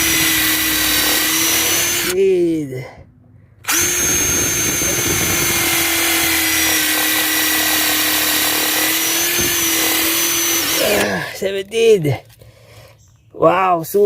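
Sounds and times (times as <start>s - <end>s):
cordless impact driver running: 0.0s - 2.2s, 3.6s - 11.1s.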